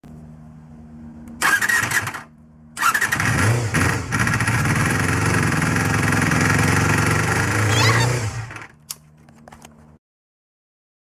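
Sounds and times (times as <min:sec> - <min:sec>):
motorcycle engine starting: 0:01.3 - 0:08.8.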